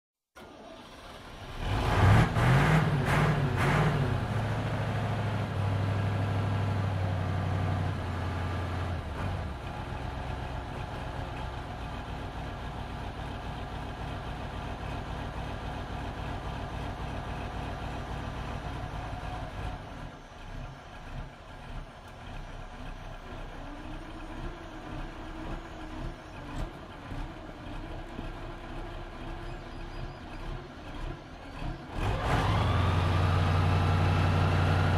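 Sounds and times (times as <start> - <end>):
engine idling: 4.6 - 34.9.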